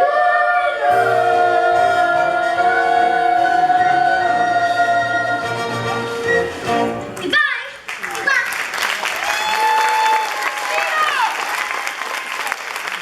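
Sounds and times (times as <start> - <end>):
group singing a long note: 0.0 - 7.0
instrumental accompaniment: 0.8 - 7.3.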